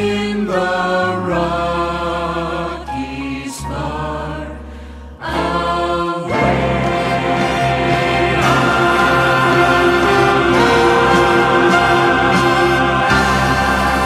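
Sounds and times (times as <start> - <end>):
chorus-like singing: 0.0 - 4.6, 5.2 - 14.0
steady bass accompaniment: 3.8 - 14.0.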